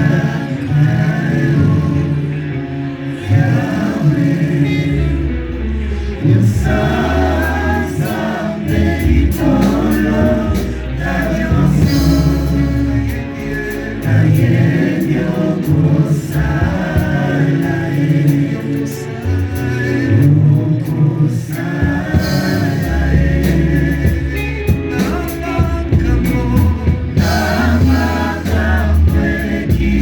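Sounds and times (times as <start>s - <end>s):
choir singing gospel: 0.0s - 30.0s
sustained low bass: 0.0s - 30.0s.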